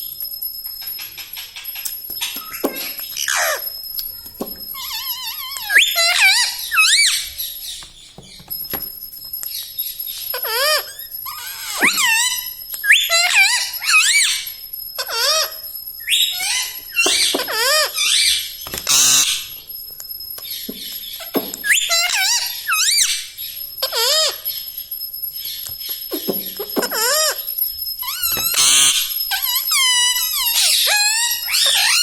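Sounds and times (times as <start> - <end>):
parrot squeaks and whistles: 0.5 - 19.7, 20.3 - 32.0
parrot screech: 2.2 - 3.7, 4.8 - 7.3, 10.3 - 19.5, 21.6 - 24.5, 26.1 - 32.0.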